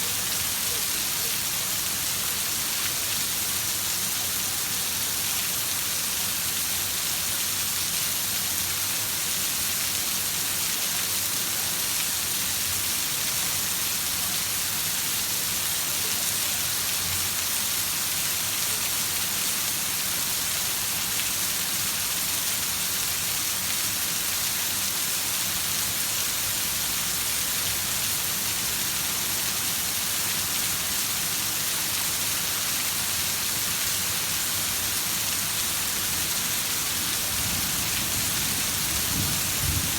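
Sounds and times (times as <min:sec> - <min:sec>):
heavy rain hissing: 0:26.4 - 0:39.9.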